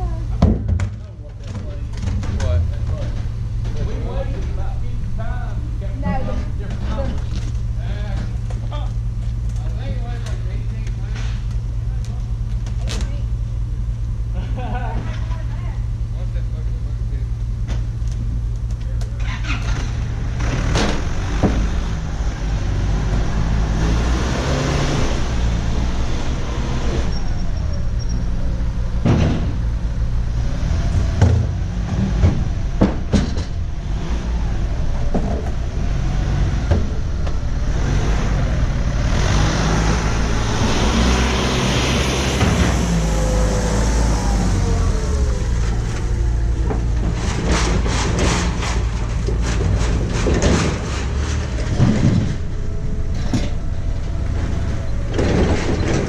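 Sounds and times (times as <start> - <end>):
vehicle engine running: 0.0 - 56.0.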